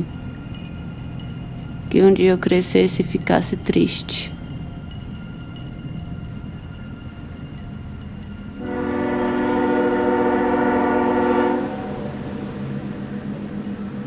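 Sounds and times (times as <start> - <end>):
train rumbling: 0.0 - 14.0
train horn blast: 8.6 - 12.6.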